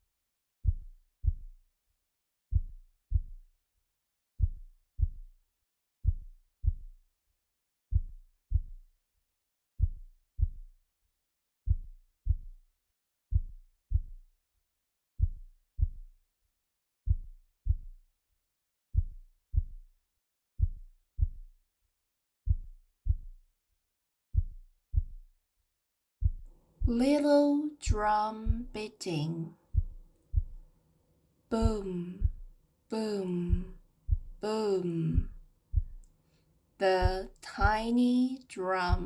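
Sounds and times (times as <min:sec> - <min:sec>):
heartbeat thumps: 0:26.2 - 0:30.6, 0:31.5 - 0:36.0, 0:36.9 - 0:39.0.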